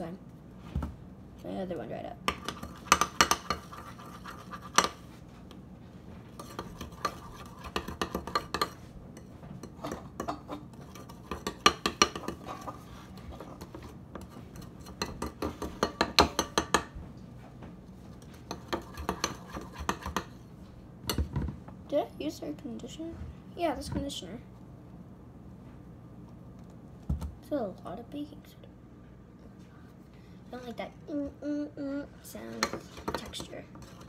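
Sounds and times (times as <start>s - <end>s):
utensil stirring against a bowl: 2.2s - 5.4s, 6.3s - 17.0s, 17.9s - 20.6s, 32.3s - 34.0s.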